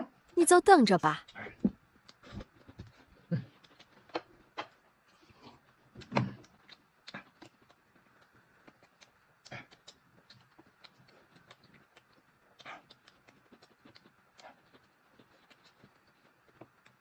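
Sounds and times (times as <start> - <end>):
chewing: 1.2 - 17.0.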